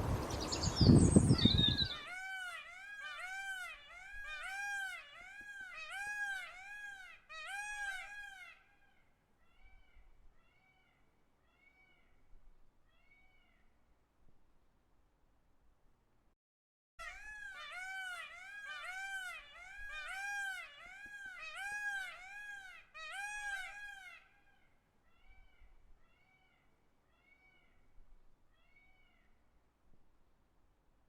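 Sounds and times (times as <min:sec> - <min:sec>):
bird calling: 0:00.0 - 0:11.0, 0:17.0 - 0:27.8.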